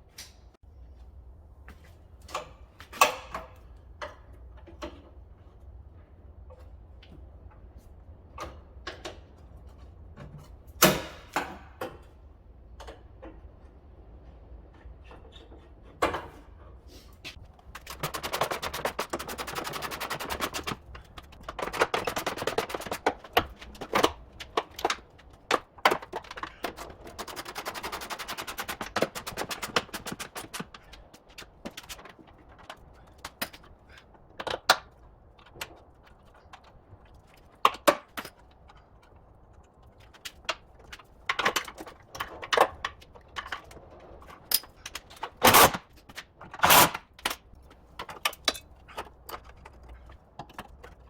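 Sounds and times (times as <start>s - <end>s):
power tool rattling: 46.5s - 47.4s.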